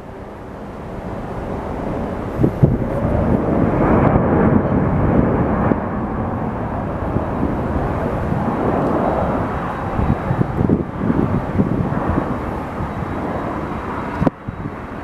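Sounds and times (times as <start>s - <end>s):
jet engines rushing: 0.0s - 15.0s.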